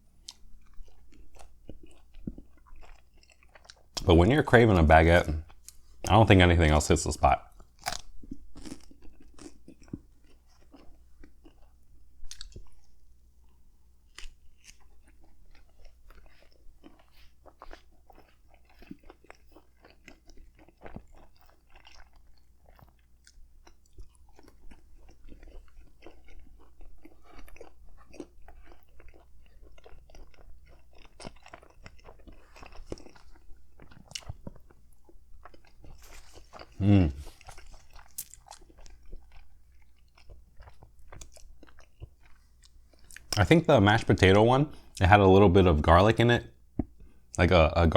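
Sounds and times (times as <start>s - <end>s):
chewing crusty bread: 0.0s - 47.9s
wet mouth clicks: 36.1s - 38.7s.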